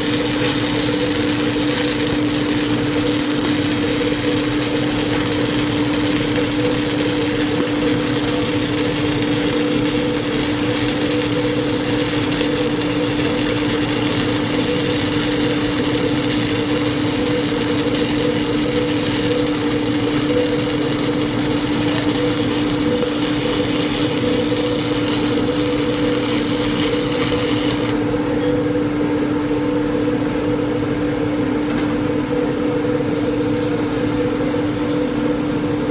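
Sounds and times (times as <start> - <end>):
welding arc crackling and hissing: 0.0 - 28.2, 33.0 - 35.9
steady two-tone hum: 0.0 - 35.9.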